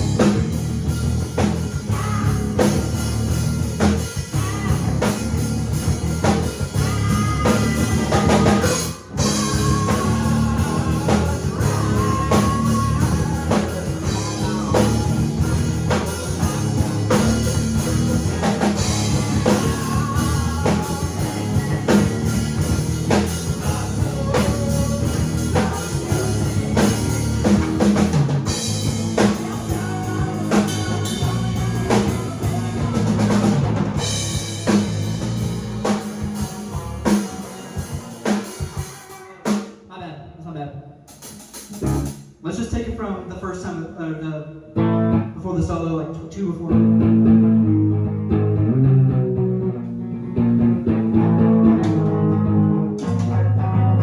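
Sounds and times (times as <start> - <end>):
bass guitar: 0.0 - 39.7, 41.1 - 43.0, 44.6 - 54.0
drum kit: 0.0 - 39.9, 41.0 - 43.0, 50.8 - 54.0
guitar: 0.0 - 40.0, 41.0 - 43.4, 44.6 - 54.0.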